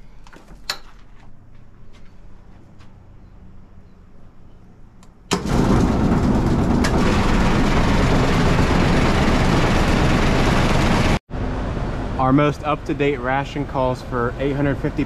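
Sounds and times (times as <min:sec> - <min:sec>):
feed-loading machinery running: 0:05.3 - 0:12.2.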